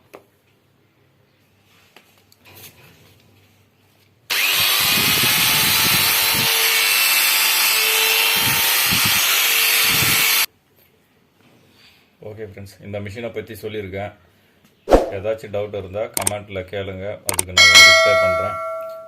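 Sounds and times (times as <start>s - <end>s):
angle grinder whining: 4.3s - 10.5s.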